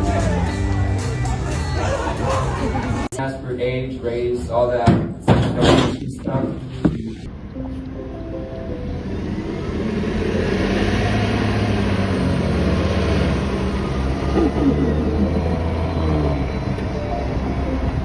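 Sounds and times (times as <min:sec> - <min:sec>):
vehicle engine running: 0:08.9 - 0:18.0.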